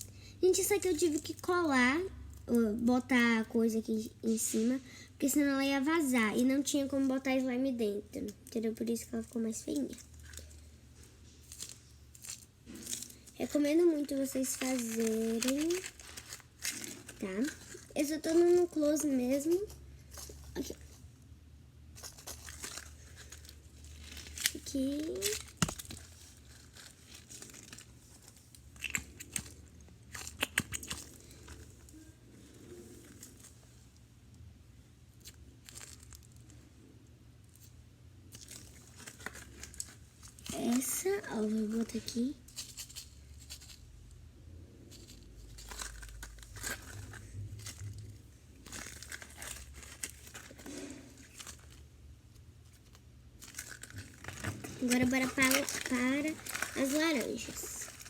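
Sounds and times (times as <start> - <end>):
balloon crinkling: 9.1 - 21.1, 21.9 - 34.0, 37.5 - 43.9, 44.8 - 58.0.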